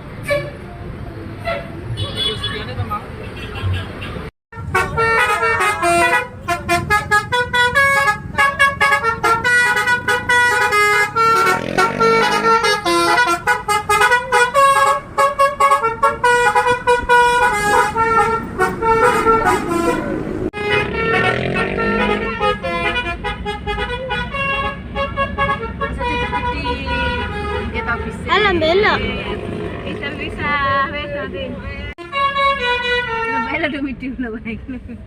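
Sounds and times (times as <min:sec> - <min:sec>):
musical air horn melody: 0:04.5 - 0:28.2, 0:32.0 - 0:33.6.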